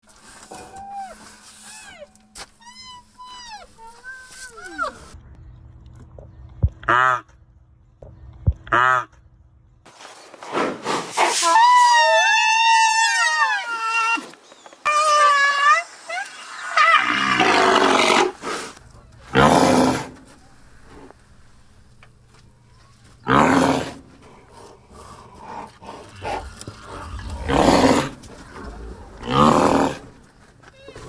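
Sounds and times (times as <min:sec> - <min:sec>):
rhinoceros squealing cries: 0:11.4 - 0:14.3, 0:14.9 - 0:18.3
rhinoceros snorting blasts: 0:23.2 - 0:30.2.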